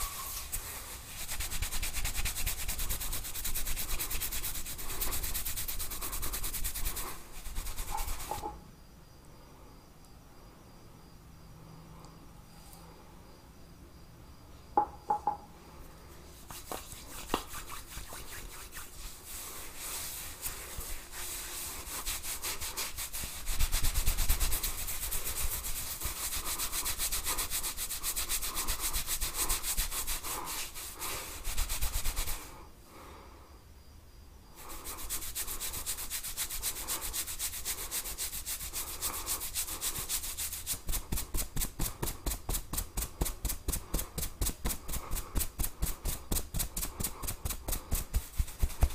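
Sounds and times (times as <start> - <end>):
fingers scratching through hair: 0.0 - 8.6, 16.4 - 32.5, 34.6 - 48.9.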